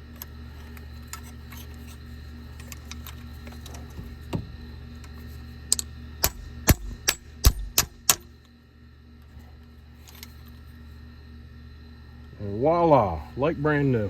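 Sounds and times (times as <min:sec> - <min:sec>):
hammer striking steel: 0:06.2 - 0:08.2.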